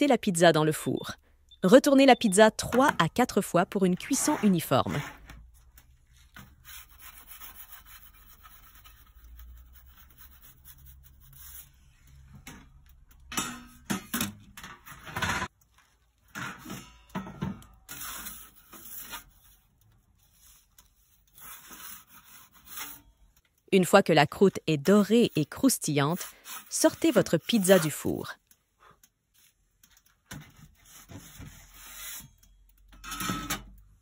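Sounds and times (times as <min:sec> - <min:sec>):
pizza peel scraping stone: 0:17.9 - 0:19.4, 0:21.3 - 0:23.0.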